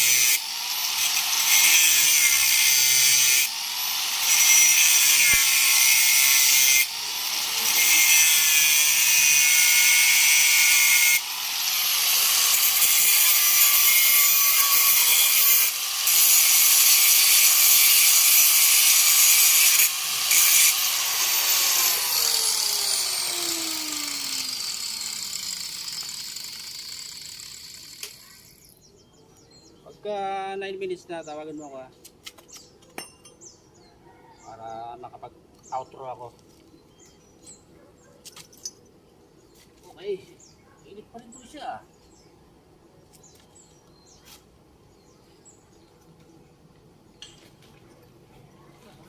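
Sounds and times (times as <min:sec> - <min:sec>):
angle grinder cutting metal: 0:00.0 - 0:28.4
grinder motor winding down: 0:17.8 - 0:28.2.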